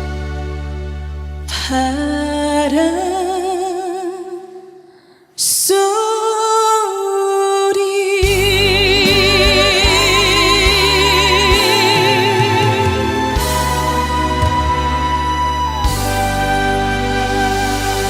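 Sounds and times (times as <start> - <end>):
woman singing long note: 8.2 - 15.9
band playing: 8.2 - 18.0.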